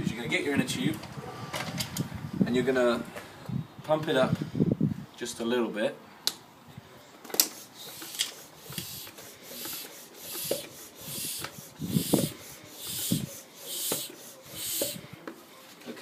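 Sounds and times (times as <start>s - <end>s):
hand pump hissing strokes: 7.3s - 15.4s.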